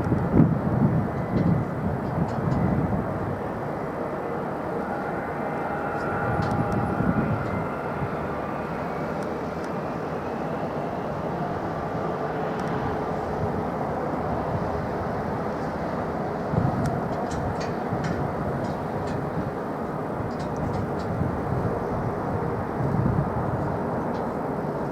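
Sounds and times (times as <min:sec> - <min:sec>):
jet engines rushing: 0:00.0 - 0:24.8
faint whining tones: 0:00.8 - 0:23.6.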